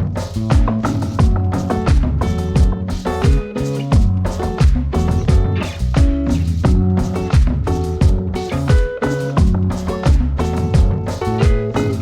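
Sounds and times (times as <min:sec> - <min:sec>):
upbeat instrumental music with drums: 0:00.0 - 0:12.0.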